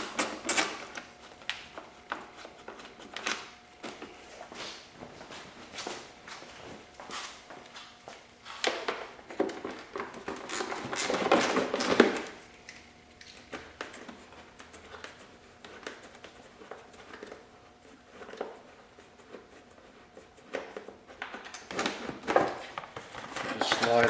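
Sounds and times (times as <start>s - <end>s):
plastic scraping and rustling: 8.6s - 12.4s, 13.5s - 24.0s.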